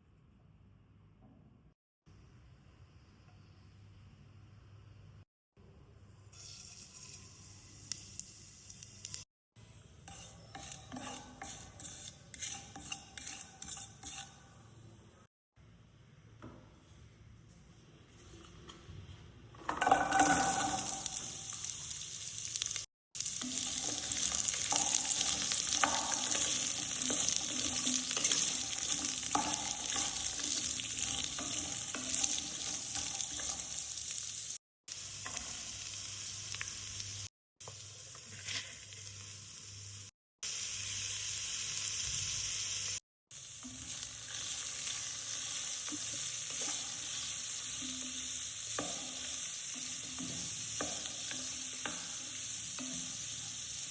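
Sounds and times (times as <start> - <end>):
food sizzling in hot oil: 19.8 - 53.9.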